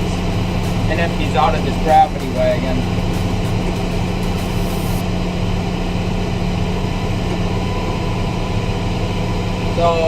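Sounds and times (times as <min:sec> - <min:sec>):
machinery humming: 0:00.0 - 0:10.0.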